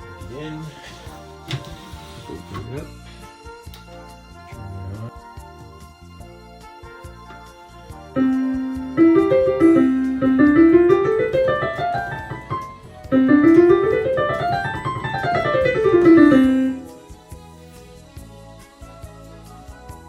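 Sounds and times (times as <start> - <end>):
digital piano runs: 8.2 - 17.0.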